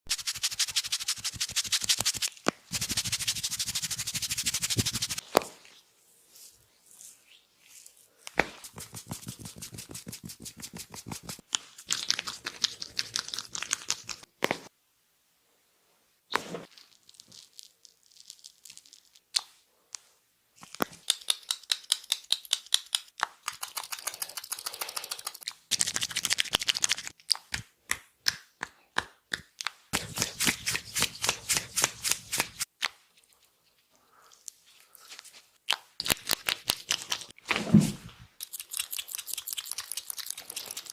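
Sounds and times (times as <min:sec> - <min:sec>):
hands slapping and tapping head: 0:00.2 - 0:05.6, 0:08.3 - 0:14.7, 0:20.6 - 0:33.0, 0:35.7 - 0:37.6.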